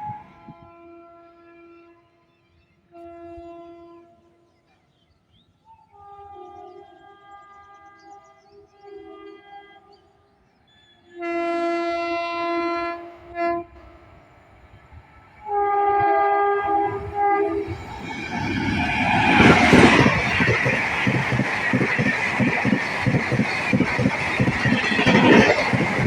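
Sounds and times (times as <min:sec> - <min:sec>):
train horn blasts: 0:11.2 - 0:14.3, 0:15.4 - 0:19.6
train wheels clattering over rails: 0:17.7 - 0:26.0.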